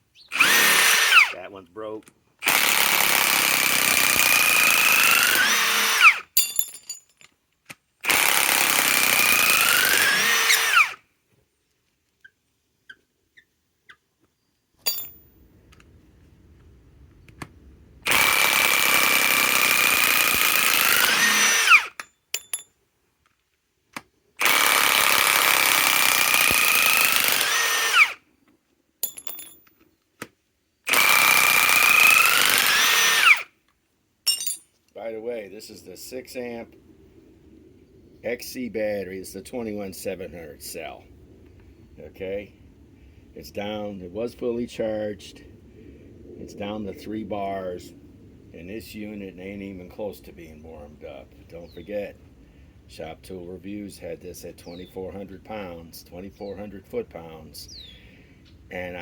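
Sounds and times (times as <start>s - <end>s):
impact wrench hammering: 14.9s - 15.2s, 34.3s - 34.6s.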